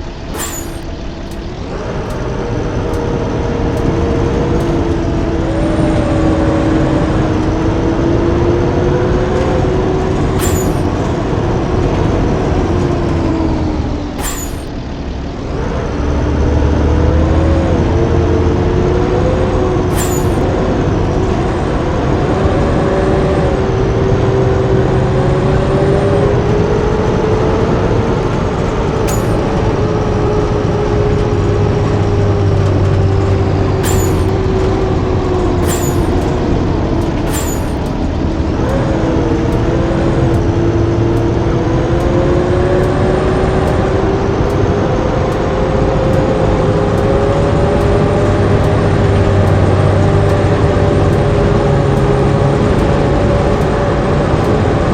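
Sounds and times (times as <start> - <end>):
bus engine running: 0.0 - 54.9
sharp clicks: 0.3 - 5.3, 10.2 - 11.2, 14.2 - 14.8, 19.9 - 20.5, 29.0 - 29.6, 33.8 - 54.7.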